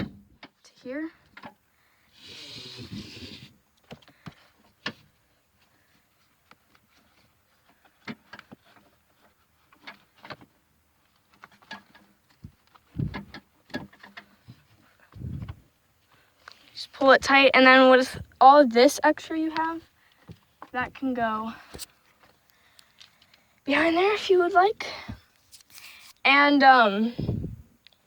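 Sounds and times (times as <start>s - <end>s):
dull thumps: 12.4s - 15.7s.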